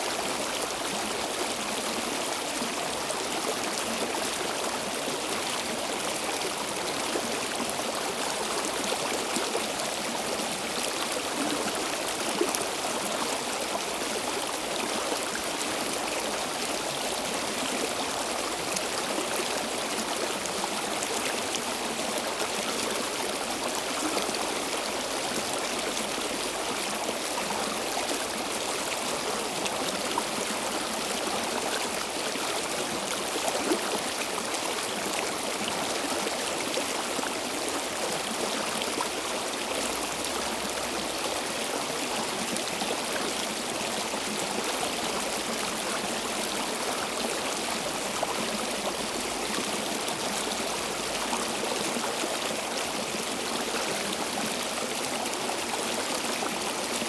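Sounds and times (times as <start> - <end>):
stream flowing over stones: 0.0 - 57.0.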